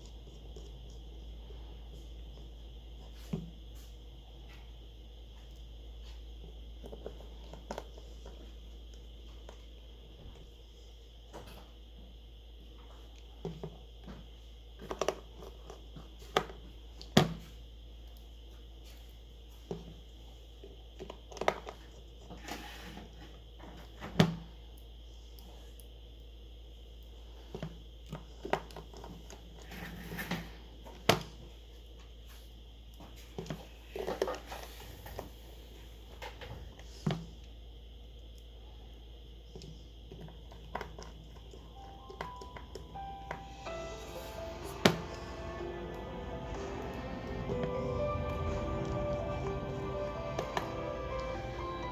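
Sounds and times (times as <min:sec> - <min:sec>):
steady low hum: 0:41.2 - 0:51.9.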